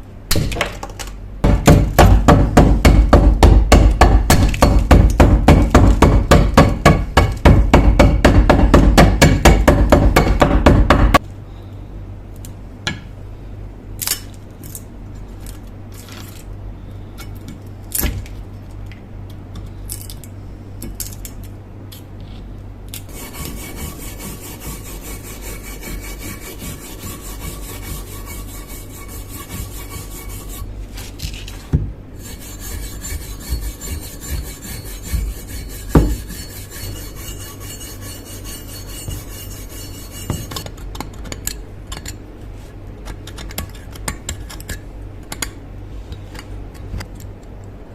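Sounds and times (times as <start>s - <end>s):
low steady hum: 0.0s - 47.9s
faint steady whir: 1.0s - 47.9s
hand tool scraping steel: 23.1s - 40.7s.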